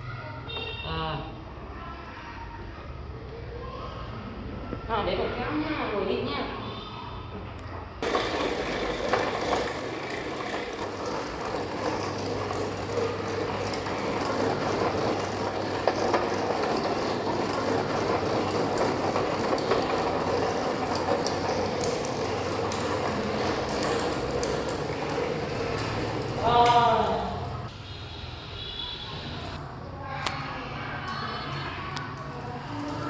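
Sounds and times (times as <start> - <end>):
cart wheels rolling on hard floor: 8.0 - 27.7.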